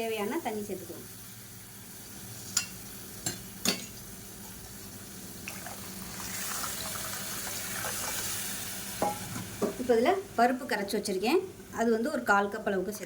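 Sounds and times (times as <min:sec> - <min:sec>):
water pouring into a pan: 0:05.4 - 0:08.8.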